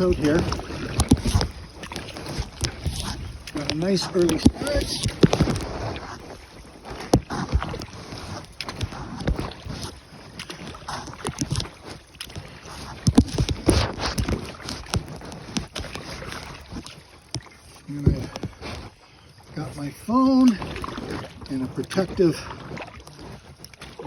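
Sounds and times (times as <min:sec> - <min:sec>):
paddle pulling through water: 0:00.0 - 0:24.0
water splashing and dripping: 0:00.0 - 0:24.0.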